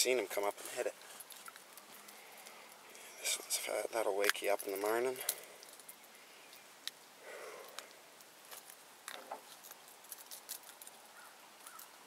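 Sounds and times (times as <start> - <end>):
small clicks taps and rustles: 7.7 - 11.0.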